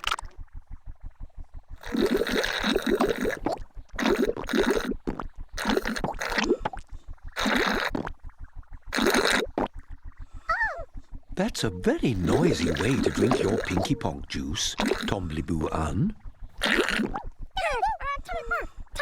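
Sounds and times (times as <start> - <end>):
cartoon gurgling slurping sips: 1.8 - 6.8, 7.4 - 8.1, 8.9 - 9.7, 12.1 - 14.0, 14.7 - 15.4, 16.6 - 17.3
low pulsing beat: 8.0 - 17.6.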